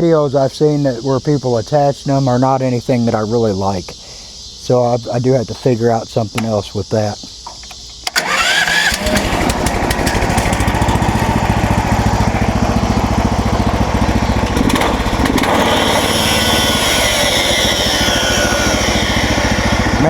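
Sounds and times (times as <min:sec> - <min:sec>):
gas engine starting and running: 0:07.4 - 0:20.0.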